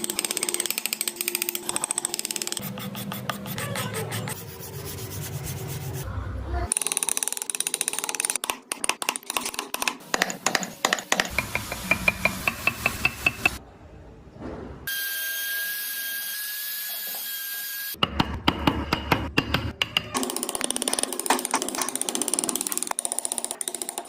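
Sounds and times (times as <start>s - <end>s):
ringing taps: 11.2s - 13.6s.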